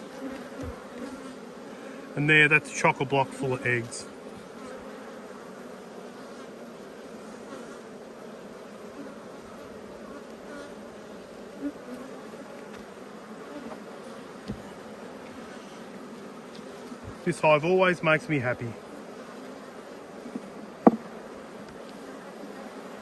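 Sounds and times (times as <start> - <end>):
honeybees buzzing: 0.0 - 23.0
faint knocks: 20.8 - 21.1.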